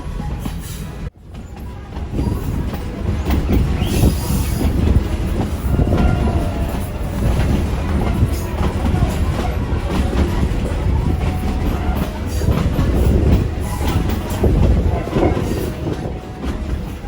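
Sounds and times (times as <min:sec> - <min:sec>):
train rumbling along track: 0:00.0 - 0:17.0
wheels clattering over rails: 0:00.0 - 0:17.0.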